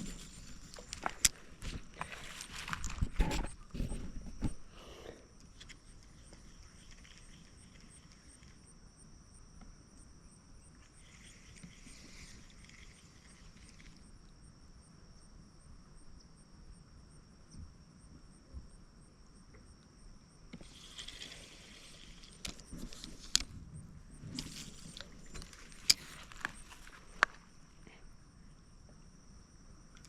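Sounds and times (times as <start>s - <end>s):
rustle: 0.0s - 4.2s, 5.4s - 9.5s, 10.3s - 14.5s, 20.4s - 27.8s
insects trilling: 0.0s - 30.0s.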